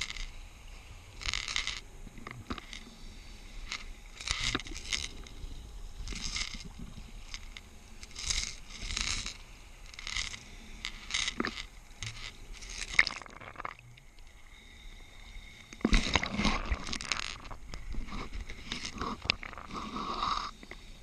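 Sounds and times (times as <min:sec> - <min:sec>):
regulator breath hissing: 0:00.0 - 0:13.0, 0:14.4 - 0:21.0
exhaled bubbles crackling: 0:06.0 - 0:14.6, 0:15.2 - 0:20.9.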